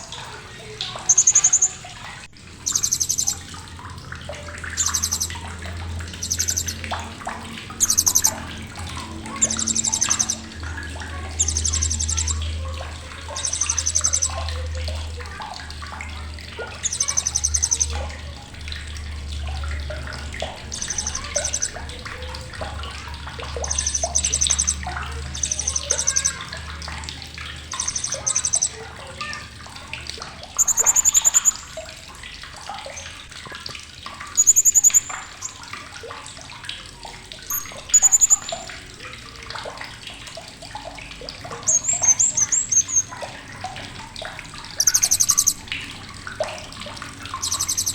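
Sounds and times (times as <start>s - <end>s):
parrot trilled chatters: 0.0s - 3.5s, 4.3s - 14.8s, 16.6s - 18.0s, 20.0s - 29.5s, 30.5s - 31.8s, 34.3s - 35.7s, 37.4s - 38.7s, 41.5s - 43.2s, 44.8s - 45.8s, 47.3s - 47.9s
faint chirps and clicks: 0.0s - 47.9s.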